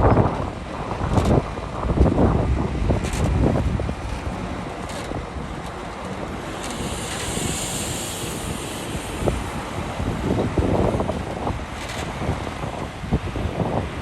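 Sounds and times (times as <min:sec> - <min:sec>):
wind buffeting microphone: 0:00.0 - 0:14.0
diesel machinery rumble: 0:00.3 - 0:14.0
high hiss: 0:06.0 - 0:12.3.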